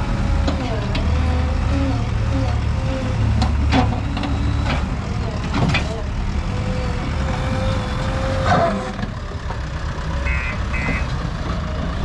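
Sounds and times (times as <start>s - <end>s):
diesel engine under load: 0.0s - 12.0s
reversing alarm beeps: 10.3s - 11.1s.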